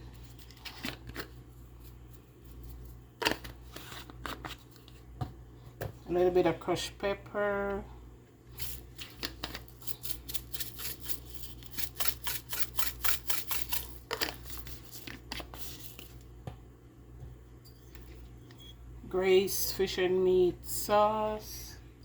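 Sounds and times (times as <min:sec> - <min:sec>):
pepper shaker rattling: 0:08.6 - 0:16.1.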